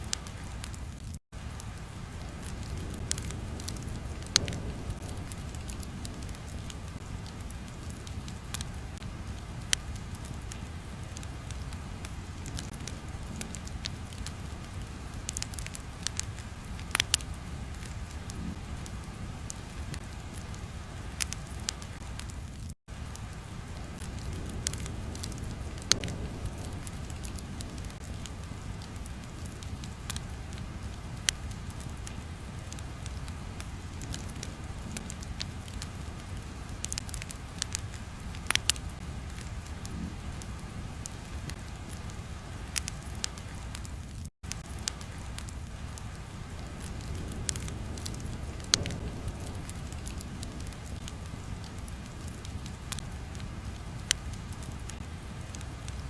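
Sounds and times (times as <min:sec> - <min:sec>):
fire crackling and popping: 0:00.0 - 0:56.0
low fire rumble: 0:00.0 - 0:56.0.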